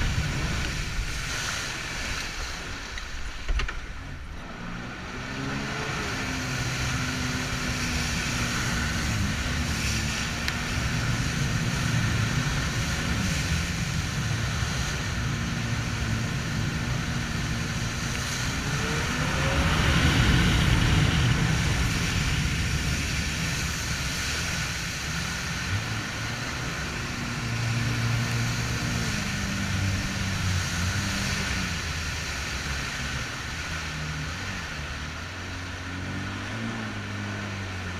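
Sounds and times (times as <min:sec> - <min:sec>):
jet ski engine running: 0:00.0 - 0:37.9.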